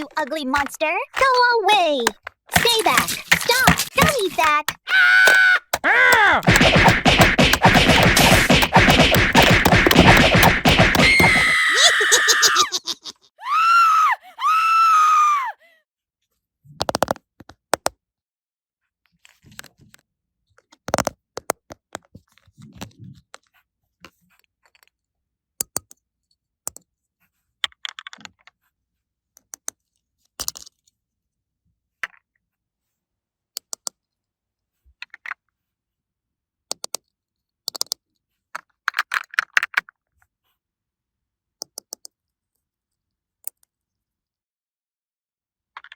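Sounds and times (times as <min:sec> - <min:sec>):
plastic toy pieces clicking: 0:00.0 - 0:06.8, 0:30.4 - 0:30.8, 0:36.7 - 0:38.0, 0:38.6 - 0:39.9.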